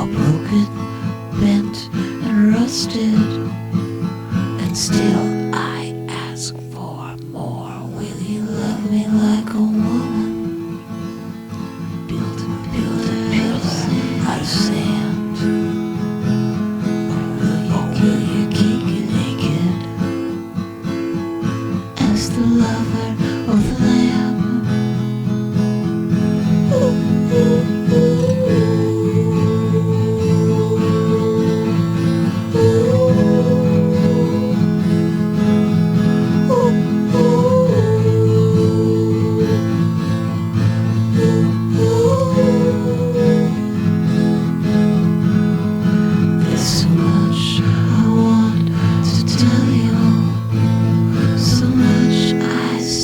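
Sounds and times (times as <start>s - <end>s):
strummed acoustic guitar: 0.0s - 53.0s
slow bending melody line: 26.5s - 40.0s.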